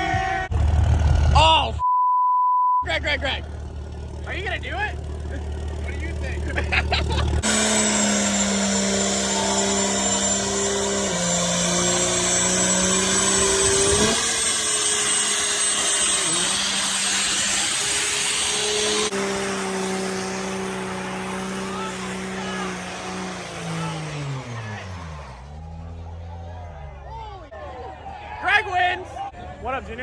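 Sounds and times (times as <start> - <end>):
diesel truck engine revving: 0.4 - 1.8, 2.8 - 27.5.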